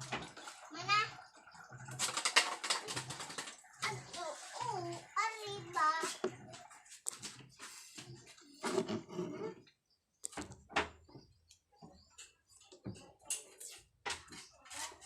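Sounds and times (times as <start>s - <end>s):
child's voice: 0.7s - 1.2s, 3.8s - 6.5s
small objects clicking and knocking: 1.9s - 4.2s.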